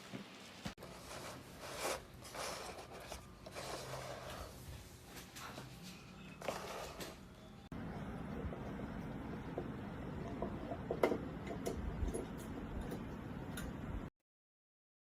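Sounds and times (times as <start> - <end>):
rustling and handling noises: 0.1 - 7.3.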